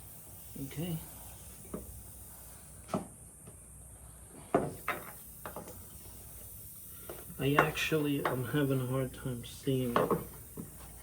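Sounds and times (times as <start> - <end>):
tools knocking and clicking: 9.9 - 10.7.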